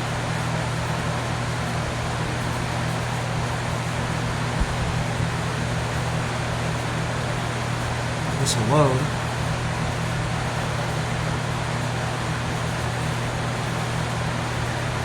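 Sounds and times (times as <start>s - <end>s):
low hum with hiss: 2.1s - 12.1s.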